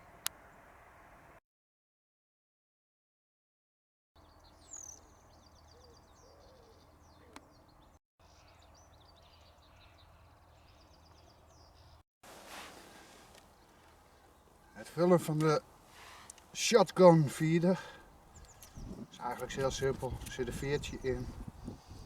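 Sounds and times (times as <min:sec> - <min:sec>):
small birds chirping and singing: 0:04.2 - 0:12.0, 0:13.3 - 0:22.0.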